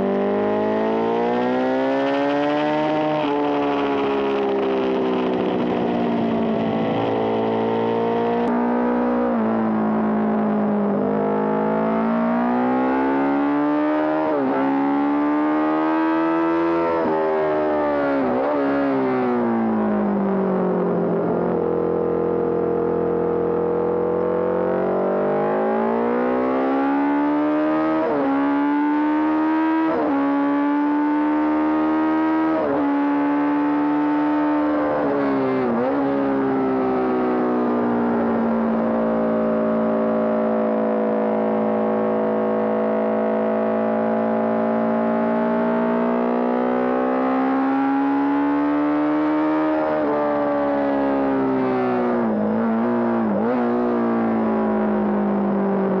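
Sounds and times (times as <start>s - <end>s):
motorcycle engine running hard: 0.0s - 9.8s.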